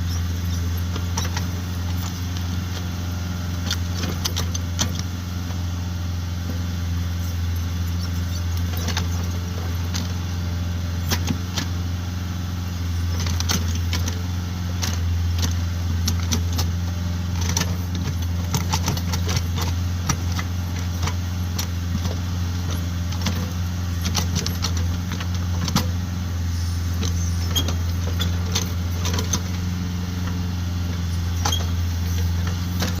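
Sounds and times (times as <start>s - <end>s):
tractor diesel engine running: 0.0s - 33.0s.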